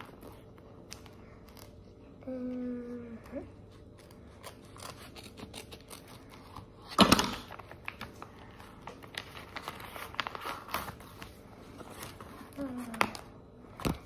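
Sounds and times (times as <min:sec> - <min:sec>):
packaging crinkling and rustling: 0:03.8 - 0:14.0.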